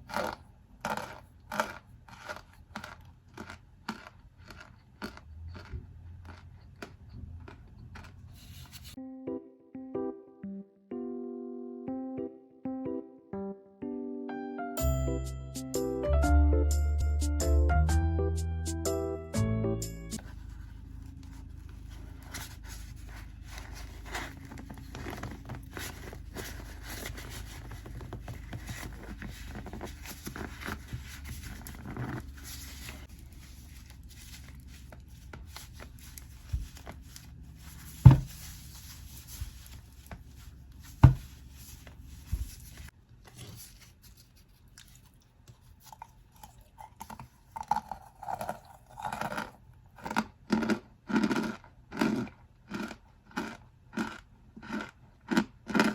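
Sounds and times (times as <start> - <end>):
loud crunches: 0.0 - 8.7, 48.9 - 55.9
cornstarch crackling and scraping: 0.0 - 9.0, 20.2 - 55.9.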